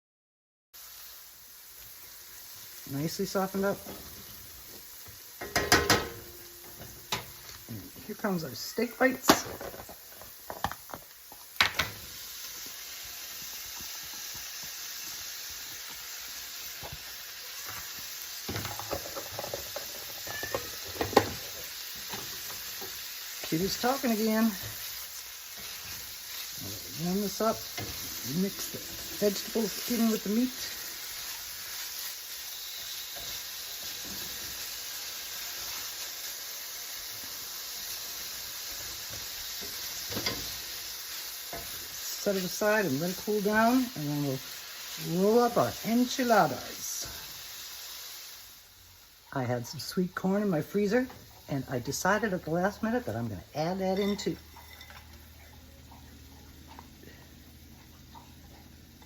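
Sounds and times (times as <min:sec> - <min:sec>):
food sizzling in frying pan: 0:00.8 - 0:59.0
meat knocking into pan: 0:05.4 - 0:07.4
utensil scraping pan: 0:18.6 - 0:30.8, 0:53.9 - 0:57.2.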